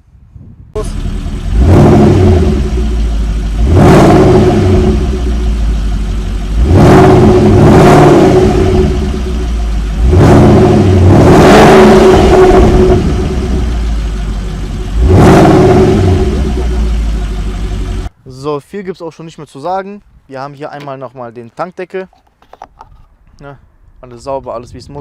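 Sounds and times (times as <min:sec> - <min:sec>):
car engine revving: 0:00.8 - 0:18.1.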